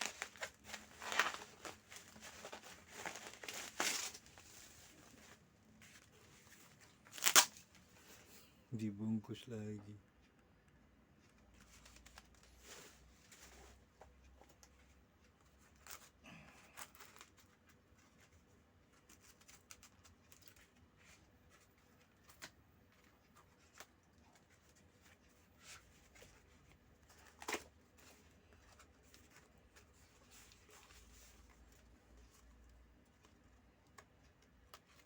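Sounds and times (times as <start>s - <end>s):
packing material rustling: 0.0s - 7.8s.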